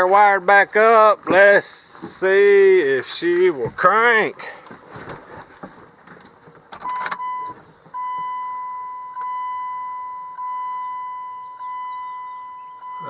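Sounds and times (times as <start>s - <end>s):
ignition key clicks: 6.7s - 7.3s
dashboard warning chime: 6.8s - 13.0s.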